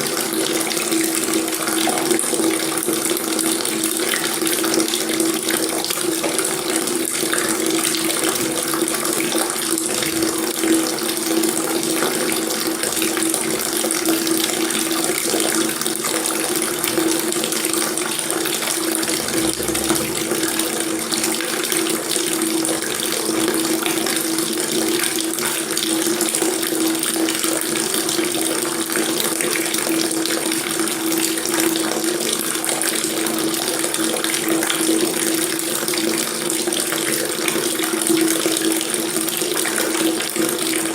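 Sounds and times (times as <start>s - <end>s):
low hum of water: 18.9s - 22.4s.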